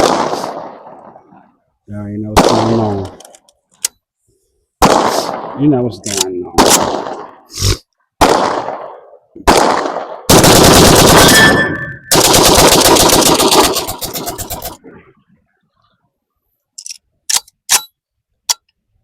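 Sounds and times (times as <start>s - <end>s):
rapid pistol gunfire: 0.0s - 0.8s, 4.8s - 5.6s, 6.6s - 7.3s, 8.2s - 14.8s.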